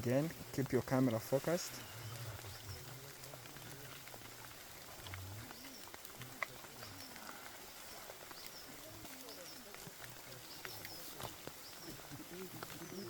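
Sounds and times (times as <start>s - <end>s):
low distant murmur: 0.2s - 13.0s.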